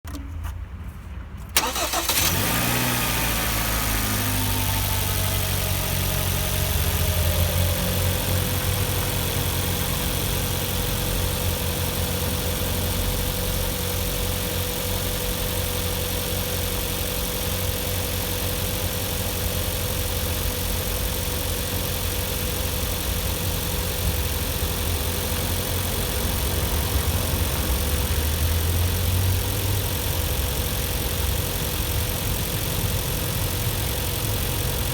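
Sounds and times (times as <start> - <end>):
car engine starting and idling: 0.1 - 34.9
engine whine falling in pitch: 2.4 - 13.7.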